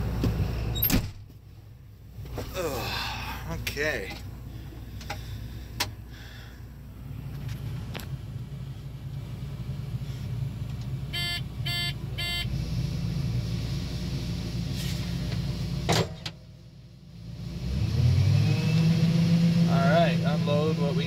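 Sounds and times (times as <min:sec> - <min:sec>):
combine engine hum in cab: 0:00.0 - 0:21.0
short beeps: 0:11.1 - 0:12.5.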